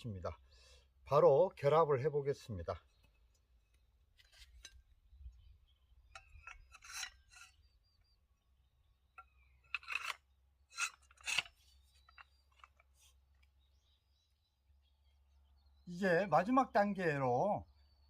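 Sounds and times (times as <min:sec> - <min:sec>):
metal scraping against metal: 0:04.2 - 0:04.9, 0:06.1 - 0:07.7, 0:09.2 - 0:13.1.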